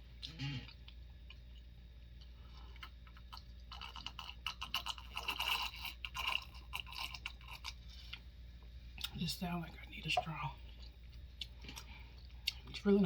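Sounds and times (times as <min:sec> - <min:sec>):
wet crunchy chewing: 0:00.1 - 0:08.3.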